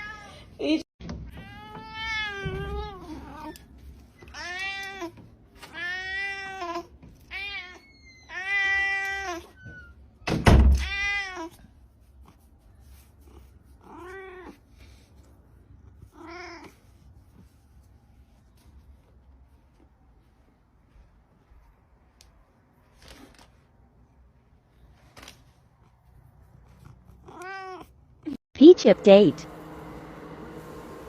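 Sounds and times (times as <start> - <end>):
cat meowing: 27.2 - 27.9.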